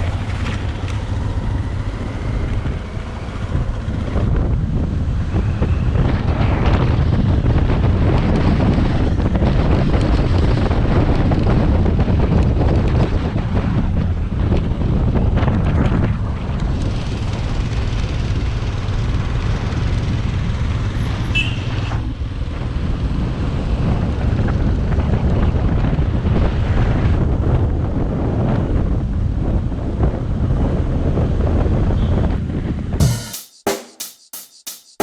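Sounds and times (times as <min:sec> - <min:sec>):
motorcycle engine rumble: 0:00.0 - 0:12.1
wind buffeting microphone: 0:00.0 - 0:33.0.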